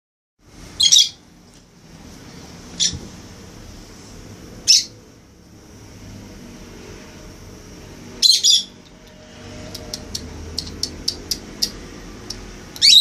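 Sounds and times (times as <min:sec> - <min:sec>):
shrill bird calls: 0:08.2 - 0:08.8, 0:12.8 - 0:13.0.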